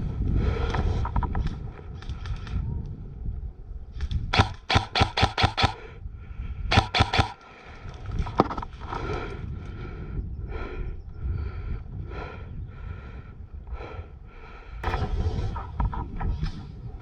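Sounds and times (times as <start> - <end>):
airsoft gun shots: 4.3 - 5.9, 6.7 - 7.5, 14.8 - 16.6.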